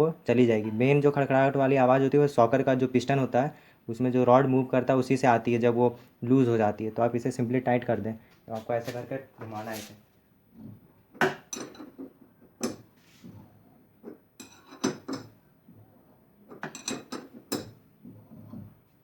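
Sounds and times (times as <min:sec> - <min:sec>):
spanner clinking on metal nut: 0:16.6 - 0:17.8.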